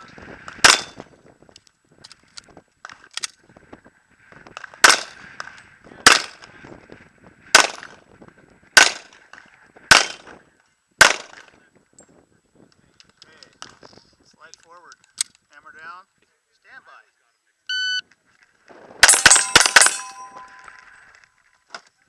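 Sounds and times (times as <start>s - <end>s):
handgun shots: 9.9s - 10.2s.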